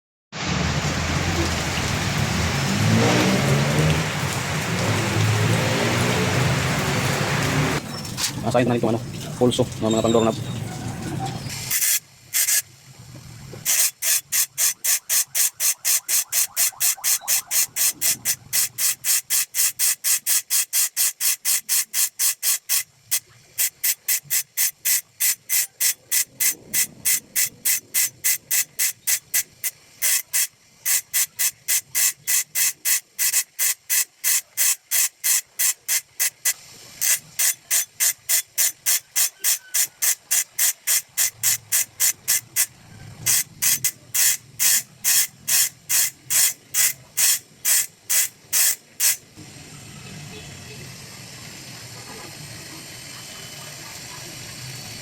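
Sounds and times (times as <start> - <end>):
file rasping on saw teeth: 23.6 - 42.7, 43.3 - 49.2.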